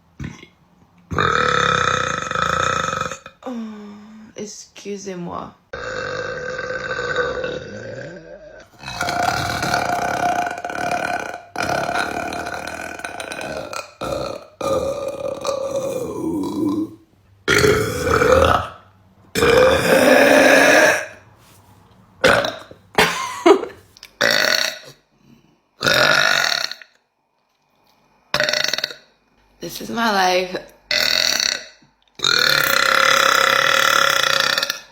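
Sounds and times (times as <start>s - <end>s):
woman belching: 0.2s - 3.5s, 5.8s - 18.8s, 19.4s - 21.2s, 22.2s - 25.0s, 28.4s - 29.0s, 30.9s - 34.9s.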